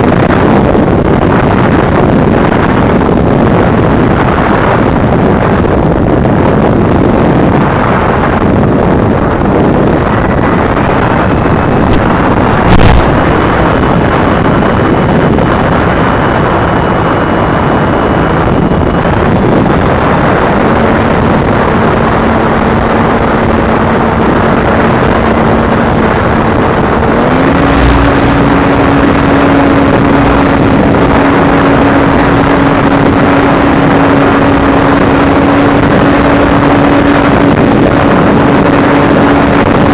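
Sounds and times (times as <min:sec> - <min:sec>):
wind rush on microphone: 0:00.0 - 0:39.9
drone motor whine: 0:26.4 - 0:39.5.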